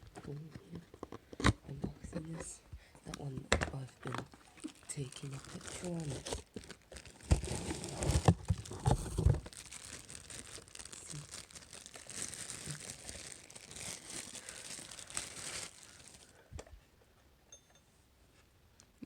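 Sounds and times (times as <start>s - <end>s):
packaging crinkling and tearing: 3.1s - 16.4s.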